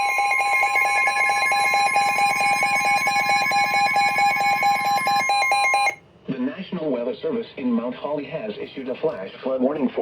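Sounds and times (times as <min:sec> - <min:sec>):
emergency alert tone: 0:00.0 - 0:06.0
rapid beeping tone: 0:00.0 - 0:06.0.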